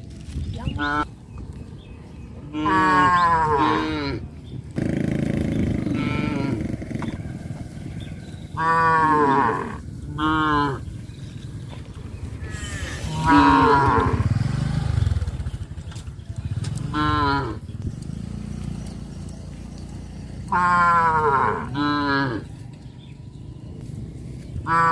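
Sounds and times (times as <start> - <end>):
cattle mooing: 2.5 - 7.3, 7.9 - 11.0, 12.3 - 14.5, 16.9 - 17.6, 20.5 - 22.5, 24.7 - 24.9.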